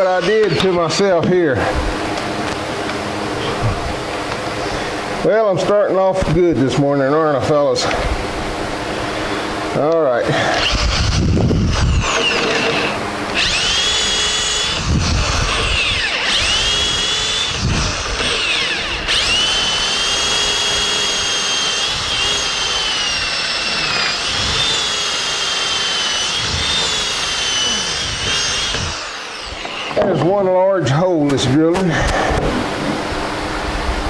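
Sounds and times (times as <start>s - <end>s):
power drill boring into wood: 0.0s - 1.8s, 9.1s - 30.4s.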